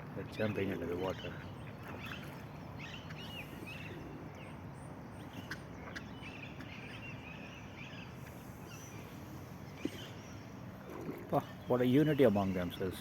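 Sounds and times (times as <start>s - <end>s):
low outdoor hum: 0.0s - 13.0s
birds chirping: 0.2s - 13.0s.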